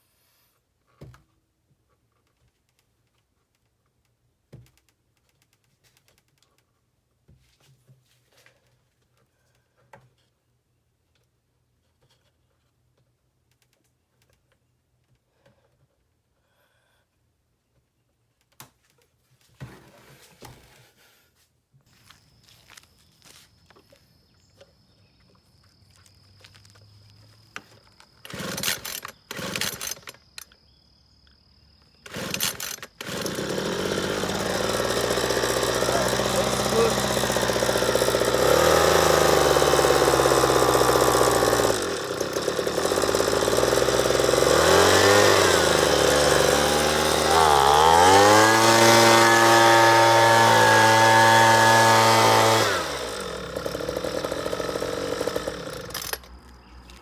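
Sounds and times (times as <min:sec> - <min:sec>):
leaf blower pull-start: 0:27.4 - 0:30.5, 0:32.0 - 0:57.0
leaf blower engine revving: 0:28.2 - 0:30.2, 0:32.0 - 0:56.4.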